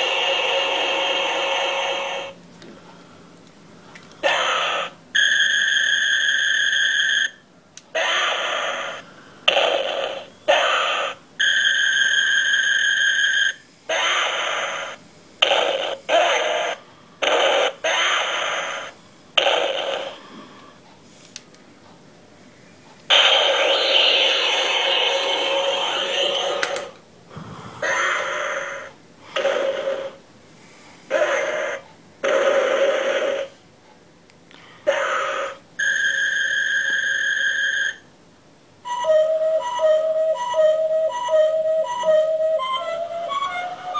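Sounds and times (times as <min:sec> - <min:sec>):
toy electronic sound effects: 0:04.2 - 0:20.2, 0:23.1 - 0:26.9, 0:31.1 - 0:33.5, 0:34.9 - 0:38.0, 0:38.9 - 0:43.9
toy hissing bursts: 0:23.1 - 0:26.6
steady beeping tone: 0:38.8 - 0:43.9.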